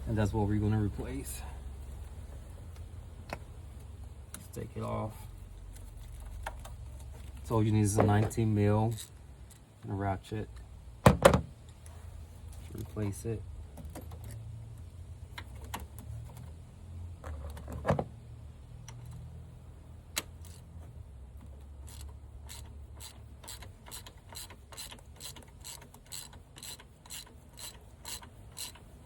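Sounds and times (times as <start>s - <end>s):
ratchet clicking: 20.1s - 20.8s, 21.5s - 29.0s.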